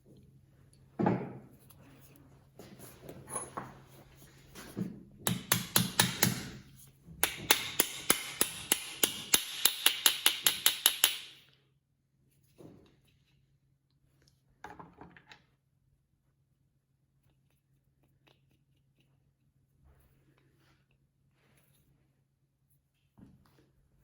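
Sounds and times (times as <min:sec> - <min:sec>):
hammer tapping on metal: 0:05.3 - 0:06.6, 0:07.2 - 0:11.4.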